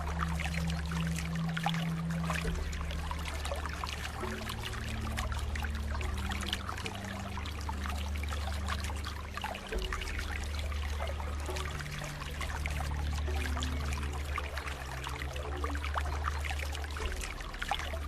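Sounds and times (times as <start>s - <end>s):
soft low music notes: 0.0s - 18.0s
water trickling and splashing: 0.0s - 18.0s.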